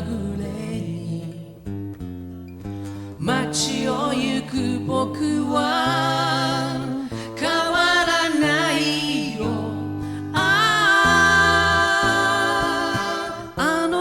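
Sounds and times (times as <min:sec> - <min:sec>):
male duo singing pop song: 0:00.0 - 0:01.4, 0:03.2 - 0:14.0.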